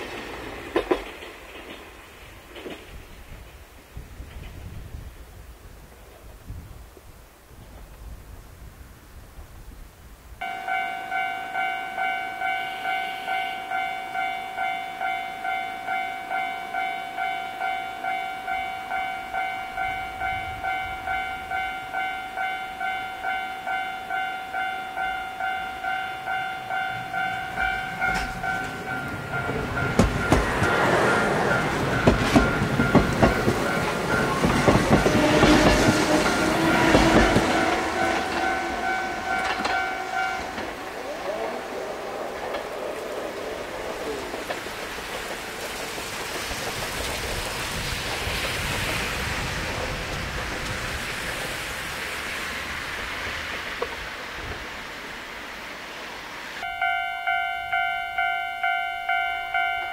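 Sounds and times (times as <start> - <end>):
train wheels rumbling and clacking: 0.0 - 5.4, 10.5 - 56.7
level crossing warning bell: 10.4 - 42.7, 56.6 - 59.9.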